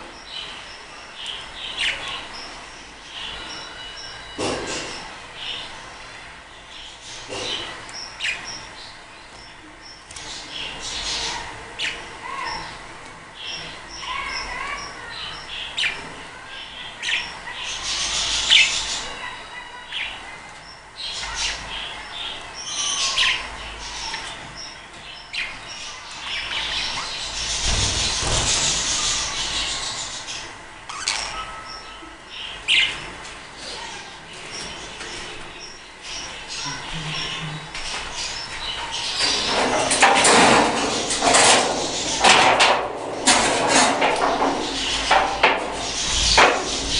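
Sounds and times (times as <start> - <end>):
budgerigars chirping: 16.6 - 33.0.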